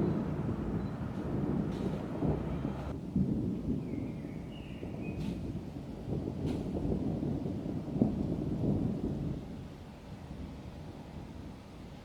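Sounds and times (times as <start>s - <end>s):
distant thunder rumbling: 0.0s - 3.6s.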